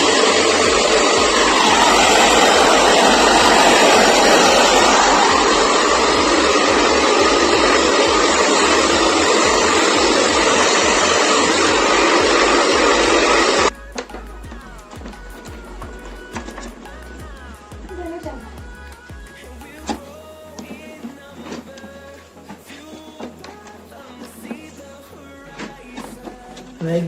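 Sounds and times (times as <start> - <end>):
hot-air dryer blowing: 0.0 - 13.7.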